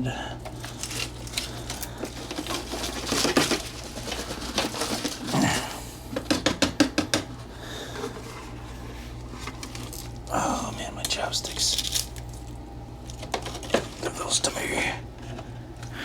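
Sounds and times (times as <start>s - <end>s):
rustling: 0.4s - 5.6s
small hard objects knocking together: 0.4s - 5.6s, 11.5s - 14.2s.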